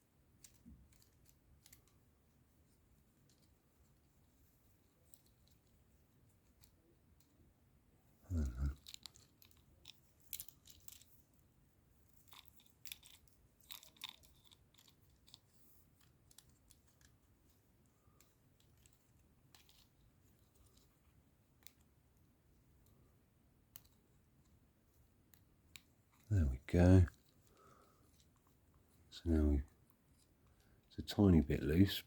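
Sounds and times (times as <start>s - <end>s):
plastic pieces clicking together: 12.2s - 15.4s.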